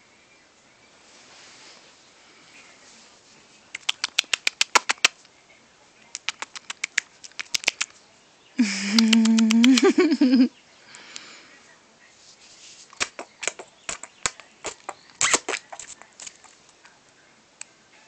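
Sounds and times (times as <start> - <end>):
wet mouth clicks: 3.7 - 5.2, 6.1 - 7.9, 8.8 - 10.0, 13.0 - 16.6
held vocal tone: 8.6 - 10.5.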